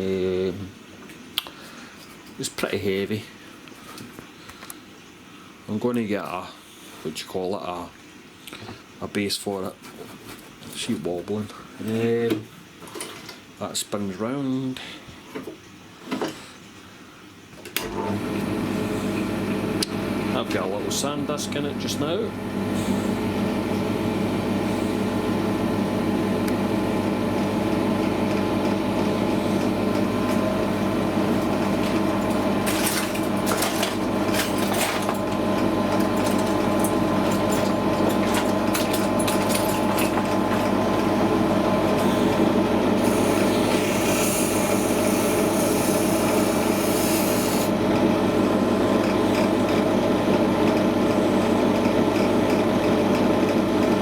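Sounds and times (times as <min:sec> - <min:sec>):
bench drill running: 0:17.8 - 0:54.0.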